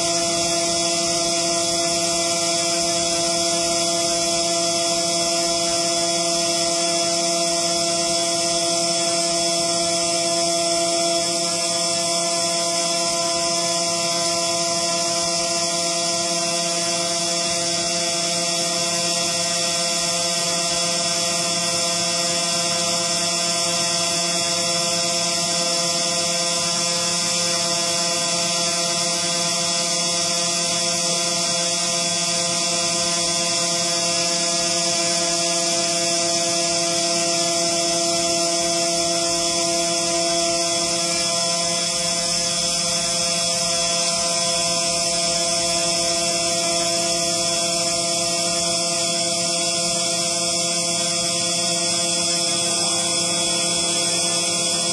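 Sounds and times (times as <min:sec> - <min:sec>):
engraving machine whine: 0:00.0 - 0:54.9.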